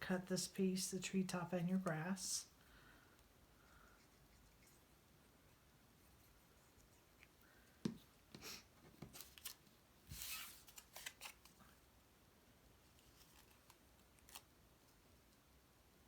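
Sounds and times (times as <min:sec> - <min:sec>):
paper rustling: 0:09.1 - 0:11.6, 0:12.9 - 0:14.5.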